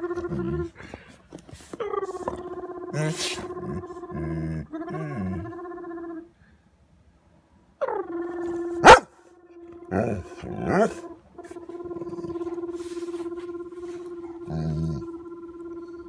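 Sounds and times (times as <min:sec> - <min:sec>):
dog growling and grunting: 0:00.0 - 0:06.2, 0:09.7 - 0:16.0.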